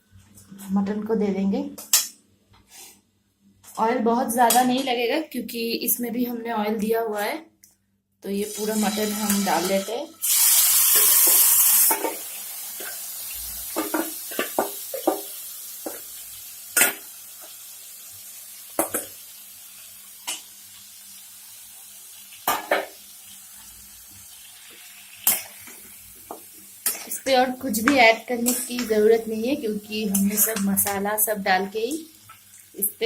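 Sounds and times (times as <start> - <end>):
meat sizzling in hot oil: 8.4 - 33.0.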